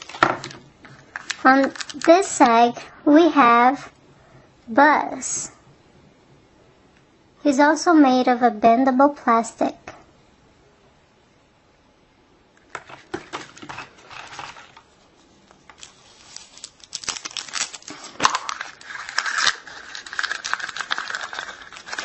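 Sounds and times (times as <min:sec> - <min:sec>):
plastic crinkling and tearing: 0:00.0 - 0:02.4, 0:12.7 - 0:14.9, 0:15.7 - 0:22.0.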